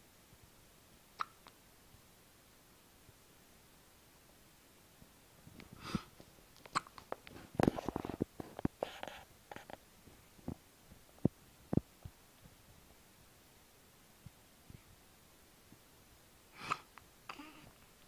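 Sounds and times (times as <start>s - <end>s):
baby hiccupping: 1.2s - 1.6s, 6.7s - 7.0s, 16.6s - 17.7s
small rustling: 5.4s - 13.0s.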